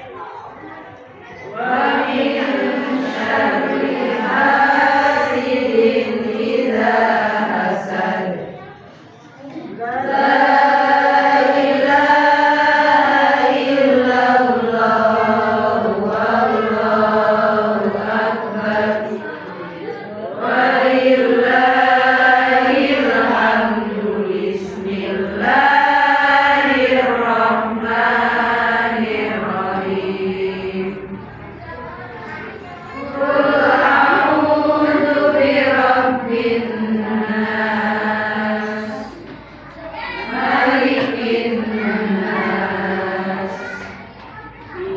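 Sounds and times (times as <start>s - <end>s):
person chanting recitation: 1.5s - 8.6s, 9.8s - 31.5s, 33.0s - 39.4s, 40.0s - 44.9s.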